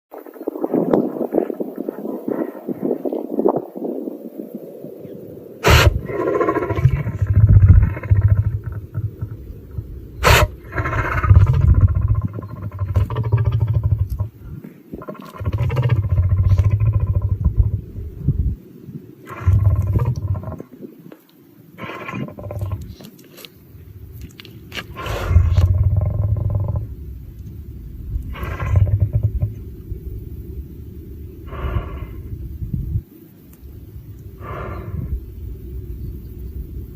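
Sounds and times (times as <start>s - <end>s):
lion sneezing: 5.6s - 7.2s, 10.2s - 11.3s, 24.7s - 25.6s
low pulsing rumble: 5.7s - 18.6s, 23.9s - 36.9s.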